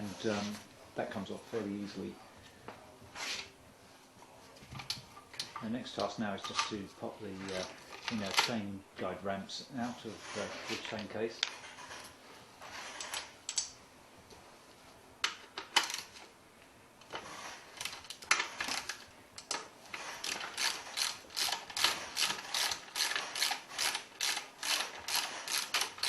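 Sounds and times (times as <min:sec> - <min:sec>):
ratchet wrench clicking: 0:20.2 - 0:26.0.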